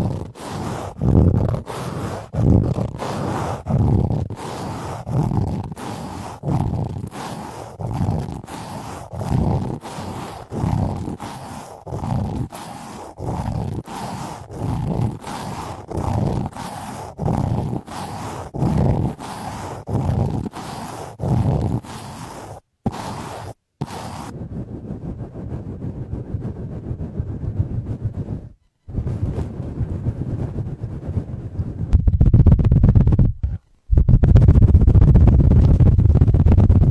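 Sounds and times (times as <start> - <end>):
low rumbling whooshes on microphone: 24.3 - 36.9.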